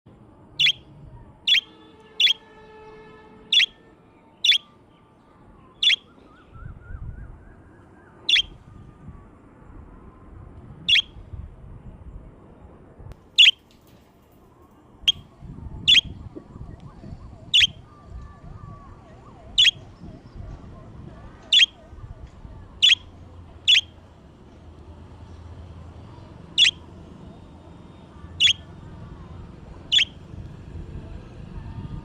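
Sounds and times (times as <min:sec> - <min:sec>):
budgerigars chirping: 0:00.6 - 0:00.8, 0:04.4 - 0:04.6, 0:21.5 - 0:21.7, 0:23.7 - 0:23.9, 0:28.4 - 0:28.6.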